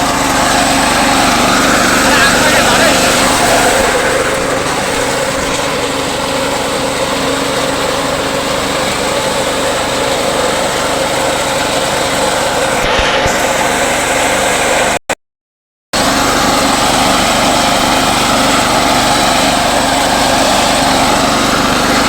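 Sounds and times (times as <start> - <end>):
small engine running: 0.0 - 15.0, 16.0 - 22.0.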